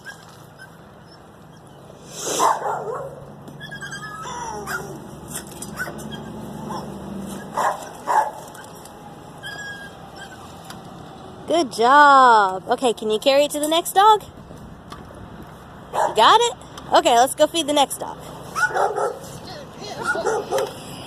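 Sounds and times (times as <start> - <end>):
dog whining: 0.0 - 8.8, 9.4 - 10.6
dog barking: 2.3 - 3.2, 4.6 - 5.0, 6.6 - 6.9, 7.6 - 8.4, 15.9 - 16.2, 18.6 - 19.3, 20.0 - 20.8.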